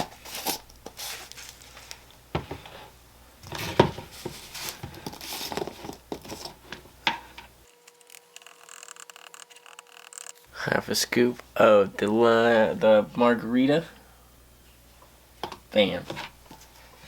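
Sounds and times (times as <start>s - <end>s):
packaging crinkling and rustling: 0.0s - 2.1s
faint steady hum: 0.0s - 17.0s.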